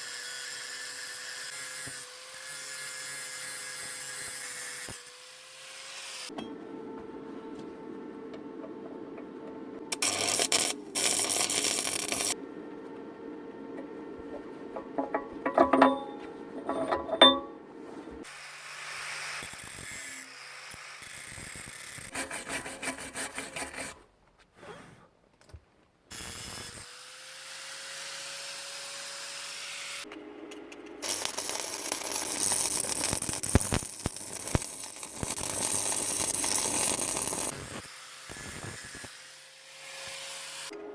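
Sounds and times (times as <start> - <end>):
harsh hissing grinding on steel: 31.0 - 39.0.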